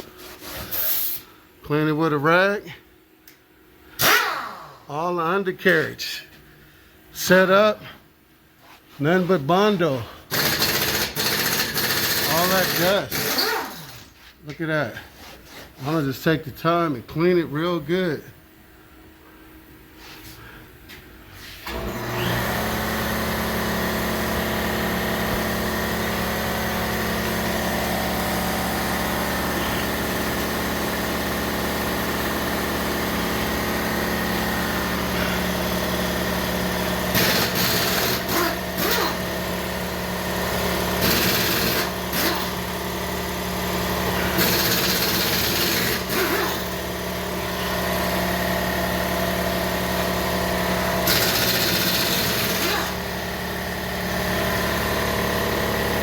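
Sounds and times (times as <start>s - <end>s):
motor running: 10.3s - 14.1s, 21.6s - 56.0s.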